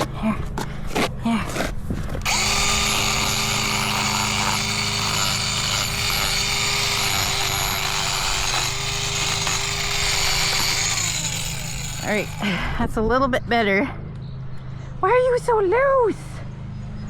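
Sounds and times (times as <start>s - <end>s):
angle grinder grinding: 2.2s - 12.7s.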